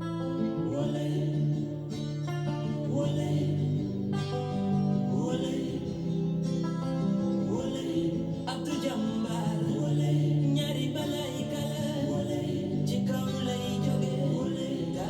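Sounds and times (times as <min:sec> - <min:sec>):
acoustic guitar: 0:00.0 - 0:15.0
man singing: 0:02.6 - 0:03.8, 0:05.0 - 0:06.0, 0:07.4 - 0:15.0.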